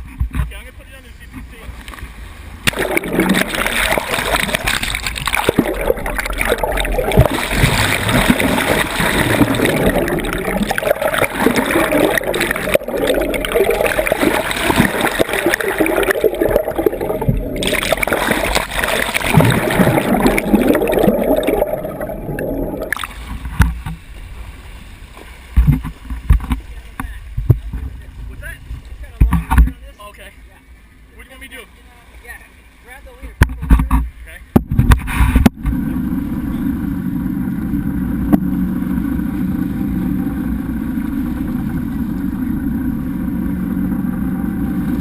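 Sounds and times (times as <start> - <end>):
seawater splashing and rushing: 1.4 - 29.5.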